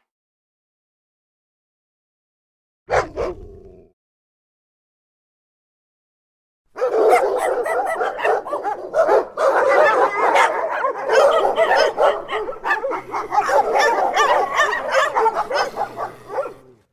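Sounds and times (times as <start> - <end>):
dogs barking and yipping: 2.9 - 3.3, 6.8 - 16.9.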